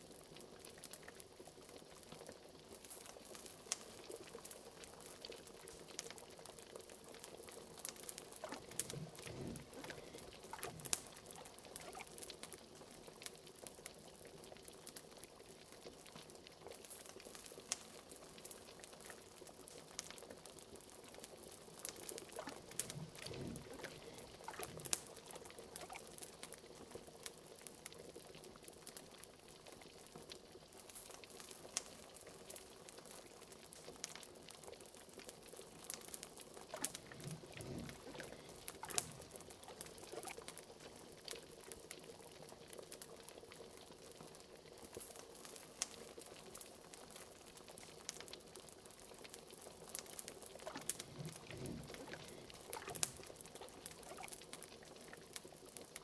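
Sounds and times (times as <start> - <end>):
liquid bubbling at a simmer: 0.0 - 56.0
fire crackling: 0.3 - 15.0, 16.7 - 27.8, 35.1 - 56.0
deep bloops: 8.4 - 12.0, 22.4 - 26.0, 36.8 - 40.3, 50.6 - 53.3.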